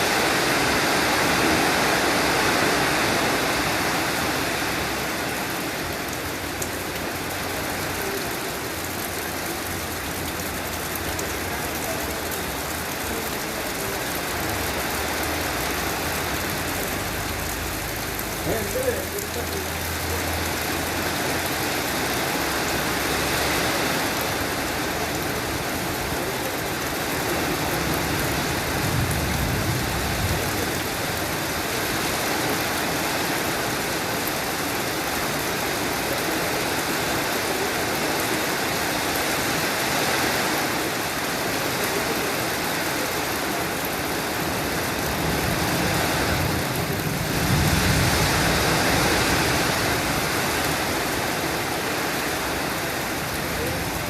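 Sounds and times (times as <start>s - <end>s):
steady rain falling: 0.0s - 54.0s
low thunder rumbles: 28.0s - 30.8s.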